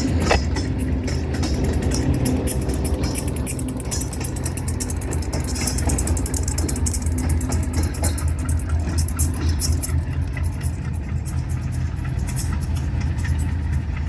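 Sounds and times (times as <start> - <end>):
engine humming: 0.0 - 14.0
rapid ticking: 0.0 - 14.0.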